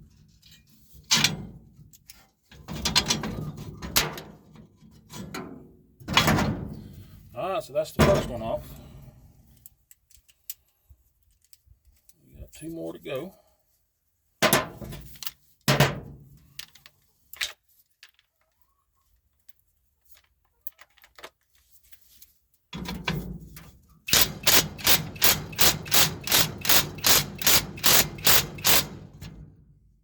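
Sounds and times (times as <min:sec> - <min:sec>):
ratchet wrench ratcheting: 0:24.1 - 0:29.2.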